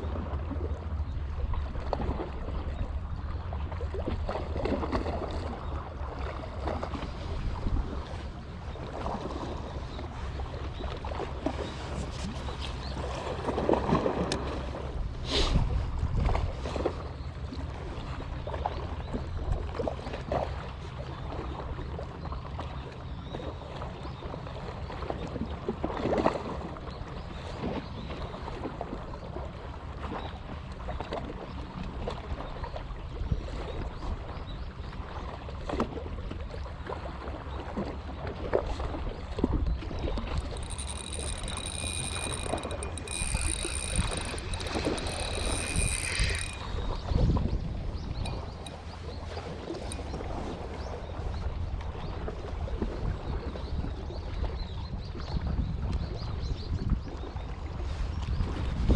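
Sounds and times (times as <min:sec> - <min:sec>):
water noise: 0:00.0 - 0:23.0, 0:35.9 - 0:54.5
wind: 0:00.0 - 0:58.9
low engine drone: 0:39.9 - 0:50.4
faint high whine: 0:40.0 - 0:49.1.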